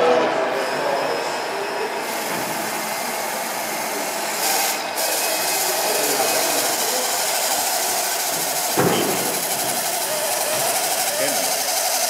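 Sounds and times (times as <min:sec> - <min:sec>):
small model truck motor running: 0:00.0 - 0:12.0.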